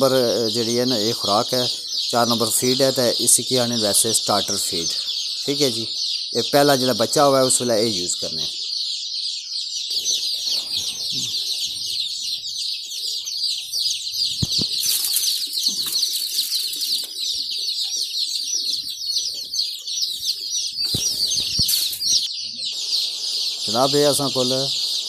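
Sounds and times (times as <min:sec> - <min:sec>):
chicks peeping: 0:00.0 - 0:25.0
rustling: 0:13.5 - 0:17.8, 0:19.4 - 0:22.3.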